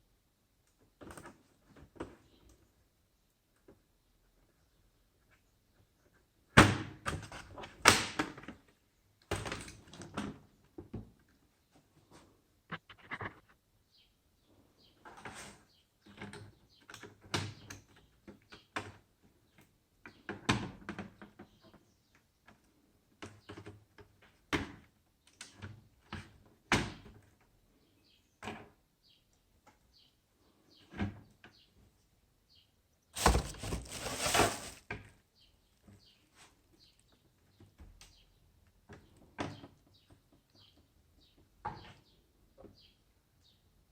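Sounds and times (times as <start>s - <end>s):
rustling scraping noise: 33.2s - 34.8s.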